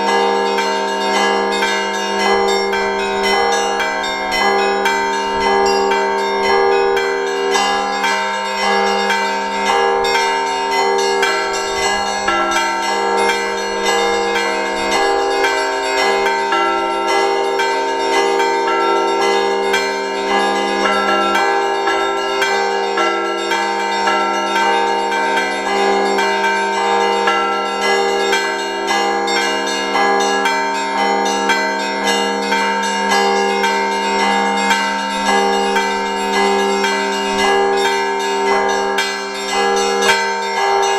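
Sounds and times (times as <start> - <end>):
large bells ringing: 0.0 - 40.9
small bells struck rapidly: 0.0 - 40.9.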